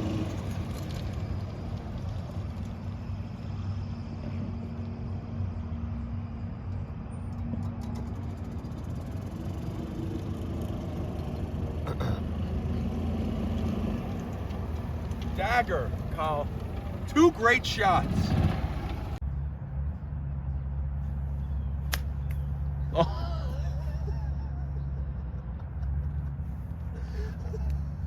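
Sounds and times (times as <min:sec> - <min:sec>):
vehicle motor humming: 0:00.0 - 0:19.4
sharp click: 0:21.9 - 0:22.4.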